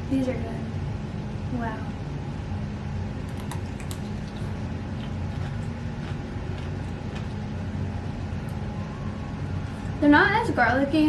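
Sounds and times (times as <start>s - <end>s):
low background hum: 0.0s - 11.0s
faint chewing crunches: 3.2s - 8.7s.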